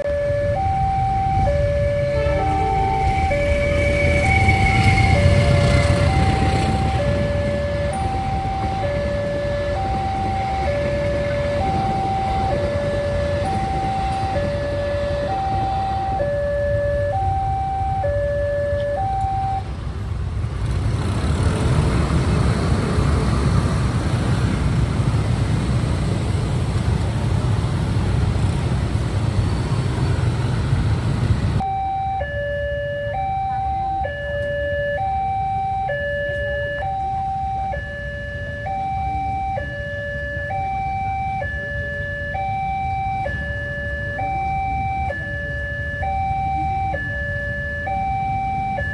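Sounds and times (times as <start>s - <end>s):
two-tone crossing alarm: 0.0s - 19.7s, 26.7s - 48.9s
loud rumbling rush: 1.2s - 16.4s, 19.7s - 31.6s.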